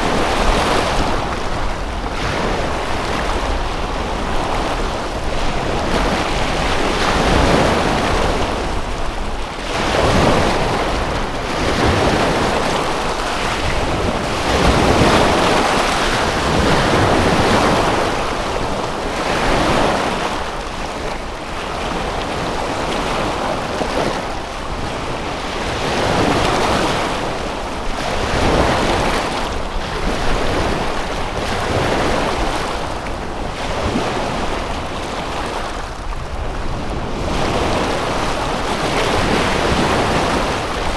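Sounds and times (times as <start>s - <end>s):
waves washing onto shore: 0.0s - 40.9s.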